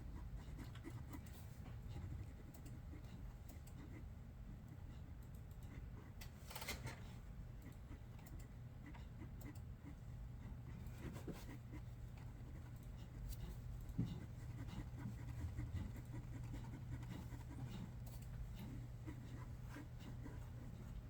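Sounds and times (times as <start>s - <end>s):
steady low hum: 0.0s - 21.0s
pencil scratching on paper: 8.9s - 21.0s.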